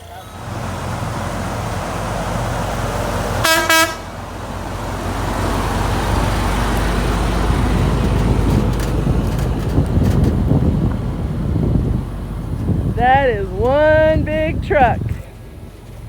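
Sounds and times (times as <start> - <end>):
truck engine rumbling: 0.0 - 16.0
truck horn toots: 2.9 - 4.4.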